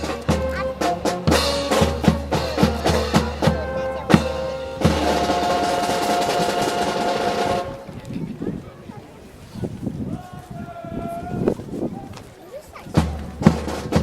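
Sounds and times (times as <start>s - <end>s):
bass drum and snare strokes: 0.0s - 7.8s, 12.9s - 14.0s
brass band playing: 0.0s - 7.9s.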